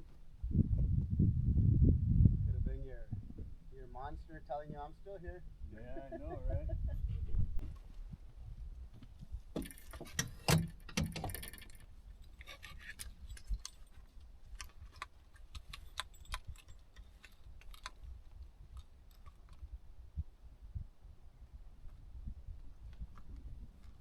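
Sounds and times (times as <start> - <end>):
jingling rustling clinks: 12.2 - 14.2.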